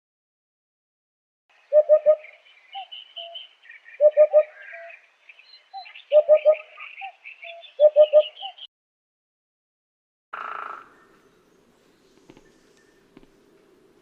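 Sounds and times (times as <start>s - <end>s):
small birds chirping: 1.5s - 8.7s, 10.4s - 14.0s.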